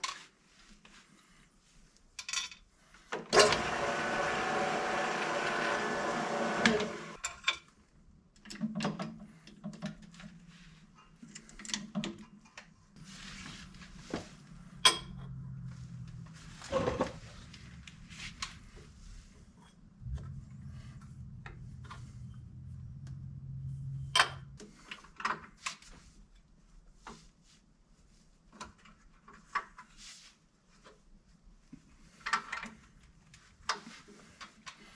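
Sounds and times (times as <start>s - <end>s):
tools clicking and knocking: 8.4s - 10.4s
low steady hum: 13.0s - 24.6s.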